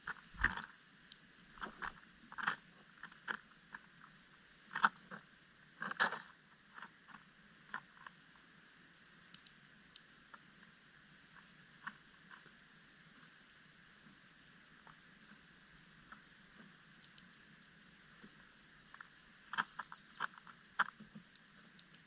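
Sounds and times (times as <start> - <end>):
birds pecking at seed: 0.0 - 4.1, 14.8 - 22.0.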